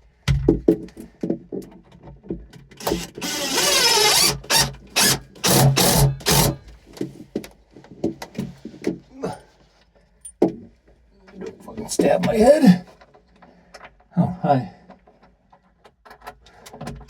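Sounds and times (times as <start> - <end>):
cordless drill motor: 2.8 - 6.7.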